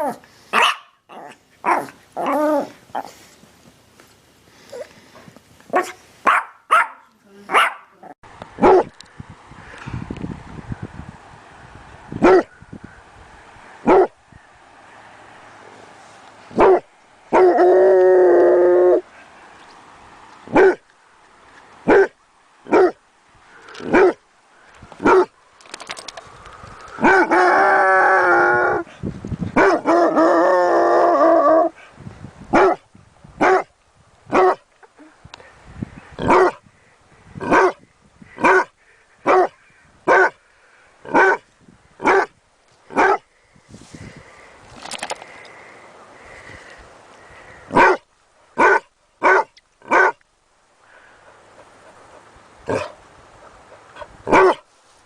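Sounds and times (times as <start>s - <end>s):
dog barking: 0.5s - 2.4s, 5.7s - 8.9s, 12.2s - 12.5s, 13.8s - 14.2s, 16.6s - 17.5s, 20.5s - 20.8s, 21.9s - 23.0s, 23.9s - 24.2s, 25.0s - 25.3s, 29.6s - 30.0s, 32.6s - 32.8s, 33.4s - 33.7s, 34.3s - 34.6s, 36.2s - 36.6s, 37.5s - 37.8s, 38.4s - 38.7s, 39.3s - 40.4s, 41.1s - 41.4s, 42.0s - 42.3s, 42.9s - 43.2s, 47.7s - 48.0s, 48.6s - 50.2s, 54.3s - 54.6s
dog howling: 1.1s - 3.1s.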